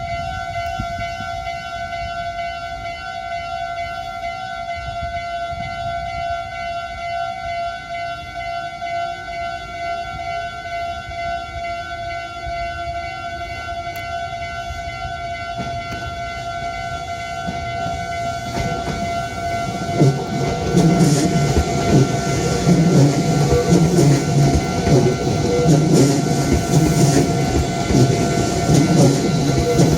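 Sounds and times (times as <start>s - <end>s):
level-crossing warning bell: 0.0s - 29.9s
train rumble: 9.2s - 29.9s.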